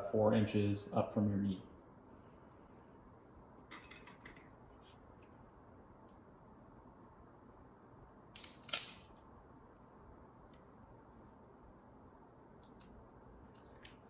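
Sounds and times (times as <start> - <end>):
small clicks: 8.1 - 9.3, 12.6 - 14.0.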